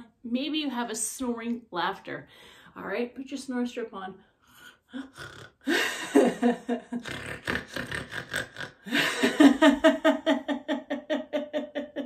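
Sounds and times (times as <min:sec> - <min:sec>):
woman mock snoring: 0:04.6 - 0:05.9, 0:06.8 - 0:09.3
woman laughing rhythmically: 0:05.7 - 0:07.0, 0:08.8 - 0:12.0.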